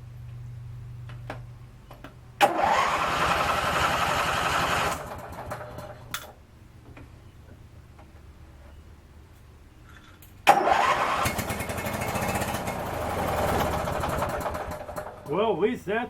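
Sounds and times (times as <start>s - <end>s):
electric starter cranking engine: 2.4s - 6.1s, 10.5s - 15.4s.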